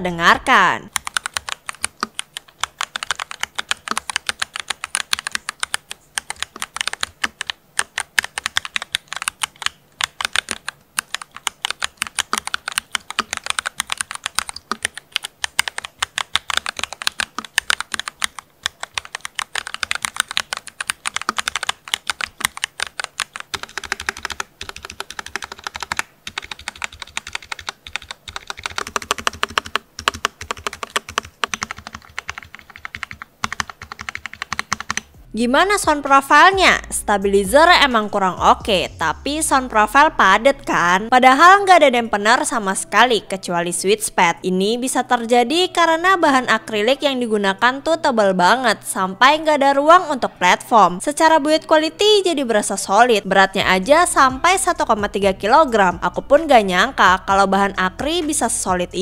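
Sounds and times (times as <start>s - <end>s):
mechanical keyboard typing: 0.9s - 35.1s.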